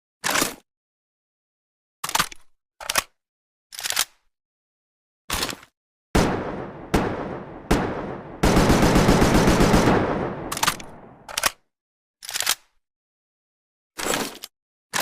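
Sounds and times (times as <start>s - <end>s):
short sharp gunshot cracks: 6.2s - 9.0s, 9.6s - 11.3s
rifle single shots: 6.2s - 11.4s
automatic rifle burst: 6.2s - 11.6s.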